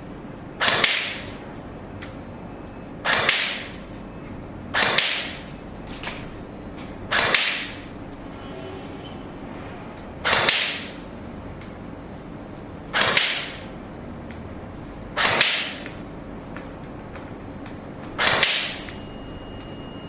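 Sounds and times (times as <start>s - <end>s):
airsoft gun shots: 0.6s - 1.4s, 3.0s - 3.8s, 4.8s - 5.4s, 7.1s - 7.8s, 10.2s - 11.0s, 13.0s - 13.6s, 15.2s - 15.8s, 18.2s - 18.8s.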